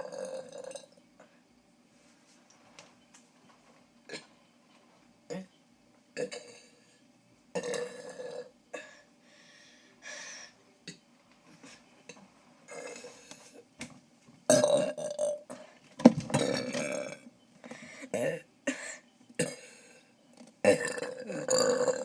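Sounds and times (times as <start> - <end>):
person burping: 0.0 - 0.9, 6.2 - 6.7, 7.6 - 8.9, 14.5 - 15.6, 16.3 - 17.3, 18.1 - 18.5, 19.4 - 19.8, 20.6 - 22.0.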